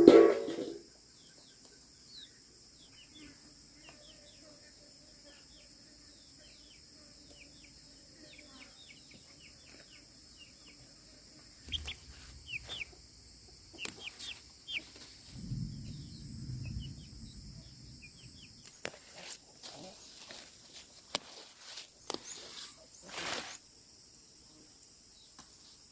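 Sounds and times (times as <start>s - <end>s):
sharp knocks: 0.0s - 0.8s
chicks peeping: 11.6s - 19.9s
low rumble: 15.3s - 18.6s.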